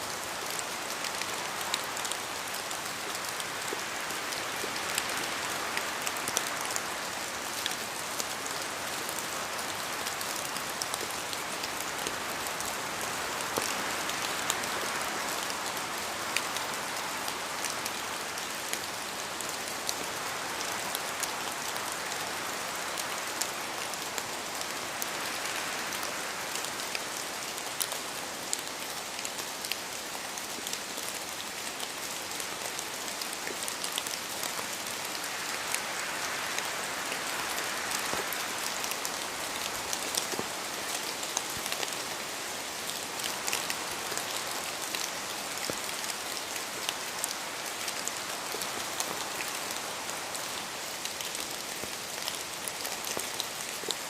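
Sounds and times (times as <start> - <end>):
rain hiss in a forest: 0.0 - 54.0.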